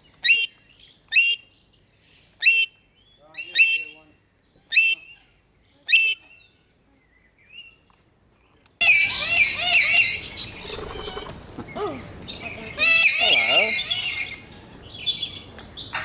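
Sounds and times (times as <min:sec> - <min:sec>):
parrots chattering and screeching: 0:08.8 - 0:16.0.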